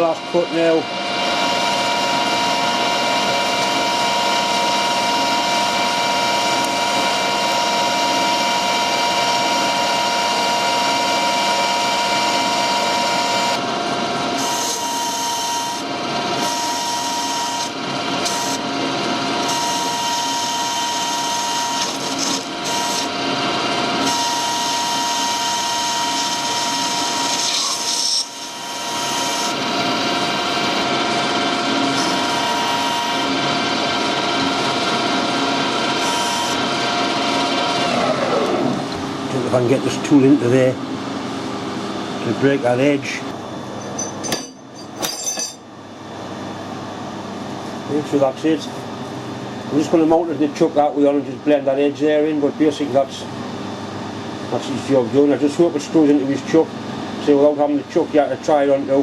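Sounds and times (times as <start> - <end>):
metal lathe whining: 0.0 - 46.4.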